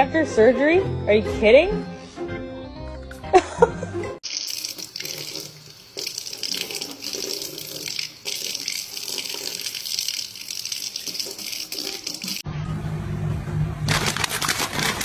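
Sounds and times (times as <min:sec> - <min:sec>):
water running into sink: 0:04.2 - 0:12.4.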